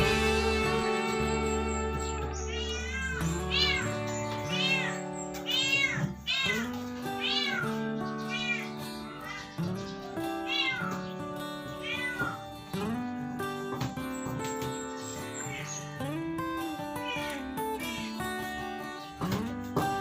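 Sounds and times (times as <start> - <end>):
sliding lead melody: 0.0 - 11.8
guitar and keyboard chords: 0.0 - 20.0.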